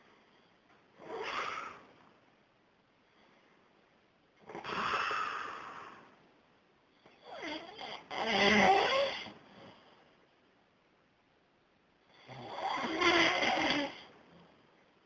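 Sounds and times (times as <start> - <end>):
man snoring: 7.3 - 9.3, 12.2 - 14.1.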